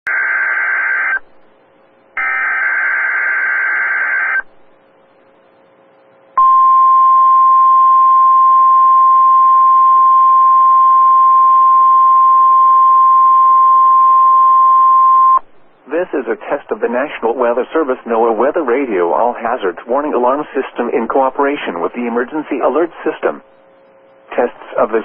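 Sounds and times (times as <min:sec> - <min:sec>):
steady warning alarm tone: 0:02.2 - 0:04.5, 0:06.4 - 0:15.4.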